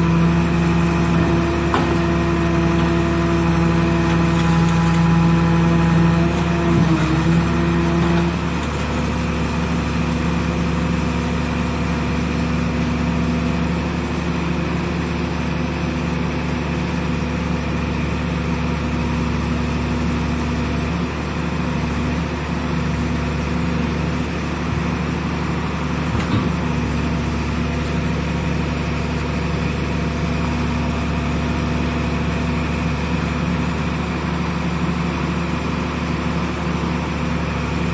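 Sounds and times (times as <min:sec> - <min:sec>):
engine humming steadily: 0:00.0 - 0:37.9.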